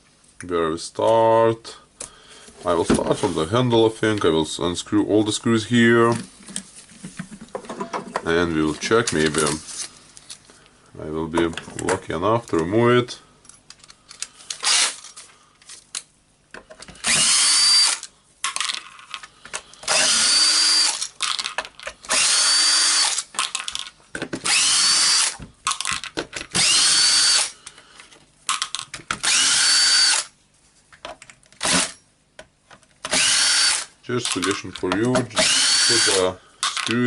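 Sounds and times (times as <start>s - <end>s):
power screwdriver motor whine: 14.6s - 15.0s, 17.0s - 18.1s, 19.9s - 21.0s, 22.1s - 23.2s, 24.5s - 25.4s, 26.6s - 27.6s, 29.2s - 30.3s, 33.1s - 33.9s, 35.4s - 36.8s.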